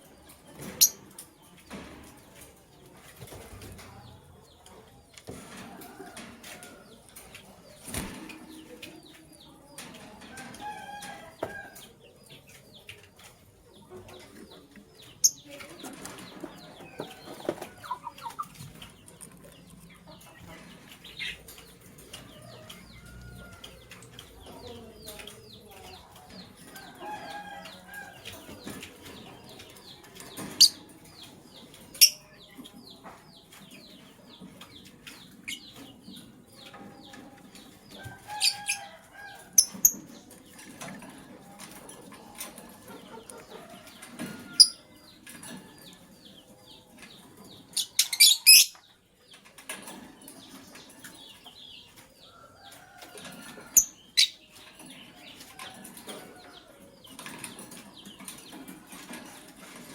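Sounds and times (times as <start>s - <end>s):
birds chirping: 0.0s - 59.9s
wings fluttering: 7.8s - 8.4s.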